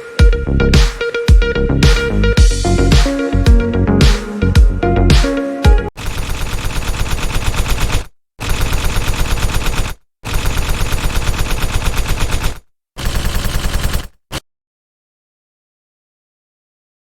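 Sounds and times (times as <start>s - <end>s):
machine-gun bursts: 6.0s - 14.4s.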